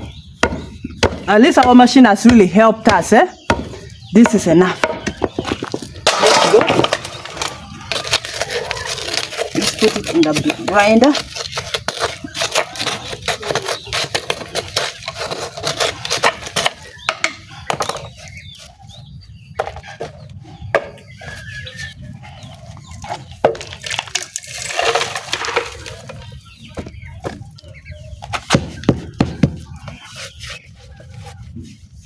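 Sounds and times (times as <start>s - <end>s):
chickens clucking: 12.1s - 23.8s, 24.8s - 31.8s.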